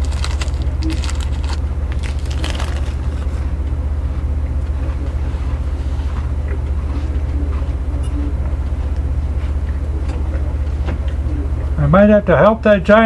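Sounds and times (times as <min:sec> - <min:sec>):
engine drone: 0:00.0 - 0:11.9.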